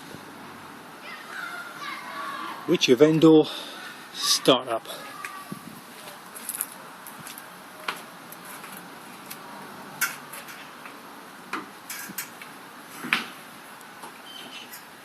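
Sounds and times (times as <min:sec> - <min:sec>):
steady hiss: 0:00.0 - 0:15.0.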